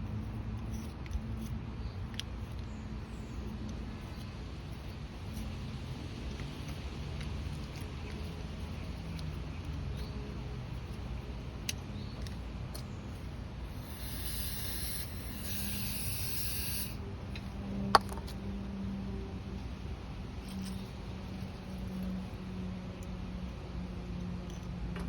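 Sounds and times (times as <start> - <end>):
small parts clicking: 6.2 - 18.4
spray hissing: 13.7 - 17.0.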